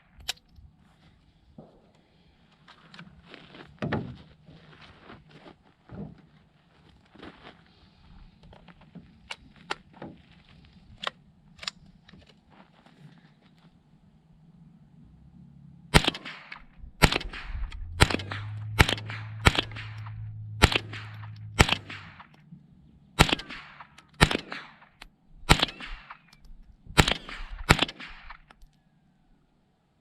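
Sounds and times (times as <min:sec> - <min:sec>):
rifle shots: 0:15.9 - 0:22.4, 0:23.2 - 0:28.6.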